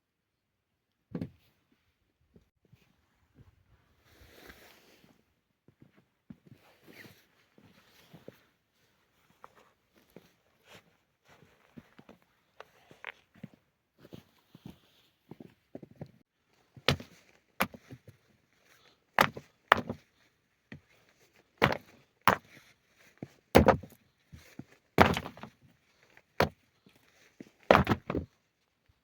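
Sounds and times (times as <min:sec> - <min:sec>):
hard knocks and thuds: 0:23.6 - 0:24.0, 0:25.0 - 0:25.5, 0:27.7 - 0:28.3.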